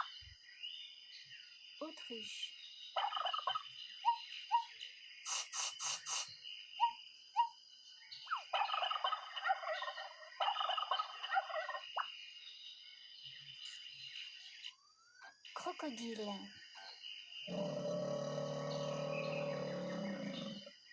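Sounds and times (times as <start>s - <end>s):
turkey gobbling: 3.0s - 4.2s, 8.3s - 12.1s.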